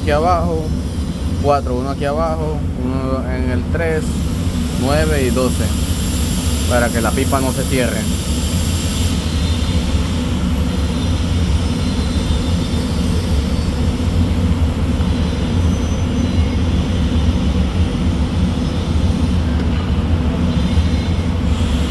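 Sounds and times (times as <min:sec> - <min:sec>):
even hiss: 0:00.0 - 0:19.6
low mechanical drone: 0:00.0 - 0:21.9.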